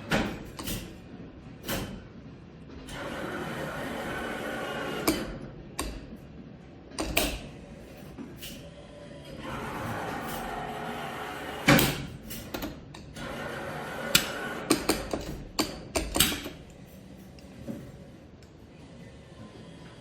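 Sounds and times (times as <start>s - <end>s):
claw machine motor whirring: 2.9s - 6.2s, 9.3s - 15.5s
sharp clicks and clunks: 6.9s - 7.6s, 11.7s - 13.4s, 14.1s - 16.8s.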